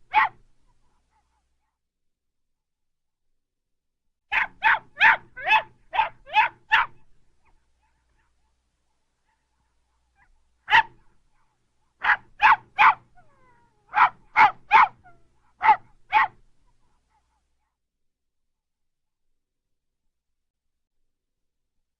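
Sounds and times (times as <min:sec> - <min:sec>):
small dog barking: 0:00.0 - 0:01.7, 0:04.3 - 0:08.6, 0:09.2 - 0:17.5.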